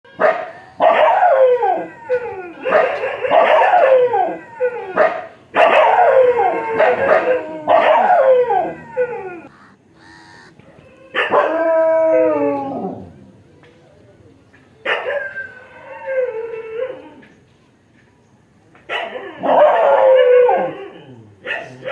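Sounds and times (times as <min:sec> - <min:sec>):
dog barking and howling: 0:00.2 - 0:10.5, 0:19.0 - 0:21.7.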